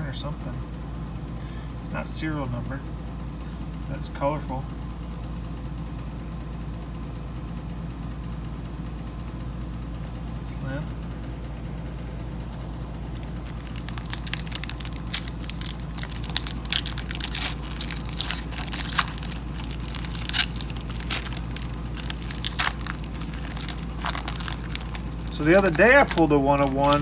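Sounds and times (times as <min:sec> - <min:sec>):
steady low hum: 0:00.0 - 0:27.0
foil wrapper tearing and crinkling: 0:13.4 - 0:27.0.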